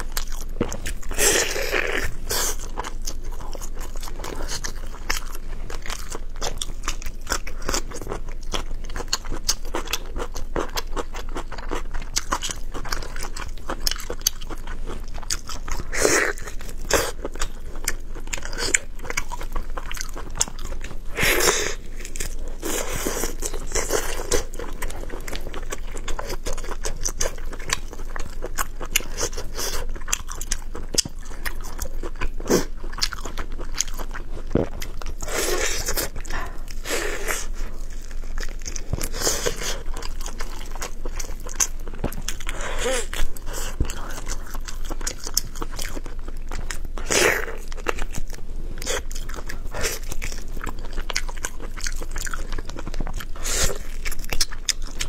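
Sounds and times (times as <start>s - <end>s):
person chewing: 0.0s - 55.0s.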